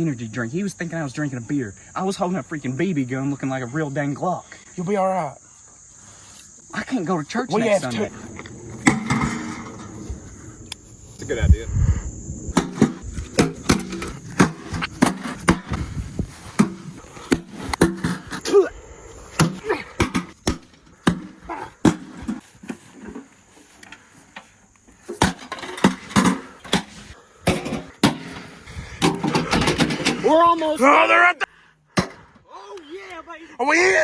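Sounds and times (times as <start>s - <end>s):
sharp knocks and bangs: 8.8s - 10.1s, 12.5s - 16.0s, 25.1s - 30.3s.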